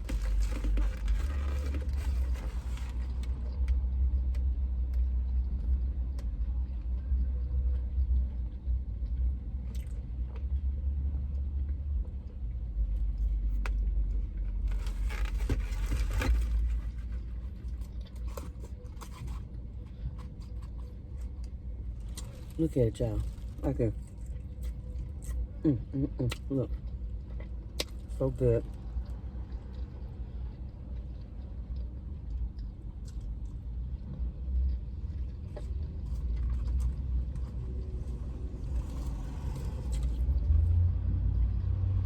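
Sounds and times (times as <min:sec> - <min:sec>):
chewing and crunching food: 0:00.0 - 0:42.0
steady low rumble: 0:00.0 - 0:42.0.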